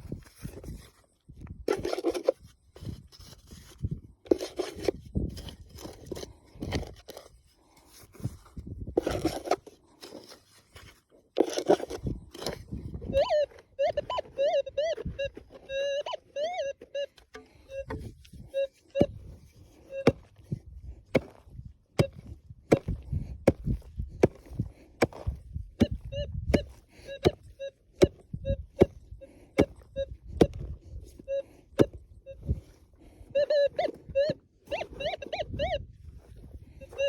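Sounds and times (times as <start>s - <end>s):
metal detector blips: 11.4s - 37.0s
digging tool striking hard ground: 20.0s - 30.8s, 31.7s - 32.6s.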